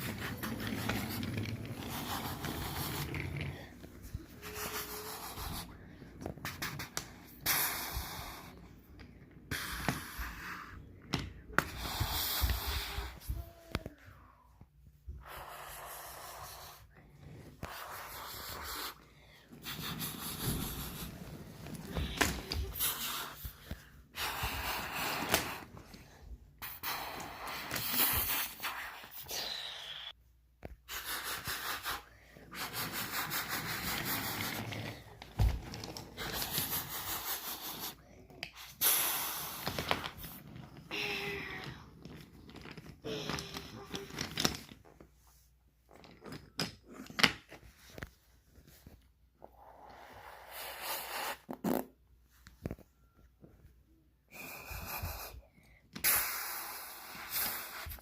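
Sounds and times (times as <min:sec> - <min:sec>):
breathy mouth hissing and whooshing: 0:11.7 - 0:13.2, 0:15.2 - 0:16.9, 0:49.6 - 0:51.7, 0:54.3 - 0:58.0.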